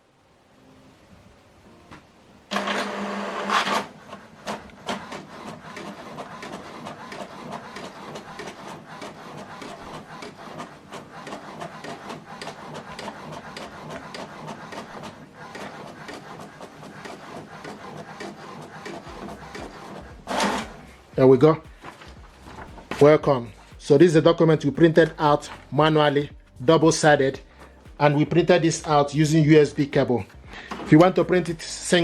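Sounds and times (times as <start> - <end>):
printer motor drawing in paper: 2.5 - 23.9
print carriage ticking rapidly: 2.5 - 27.4.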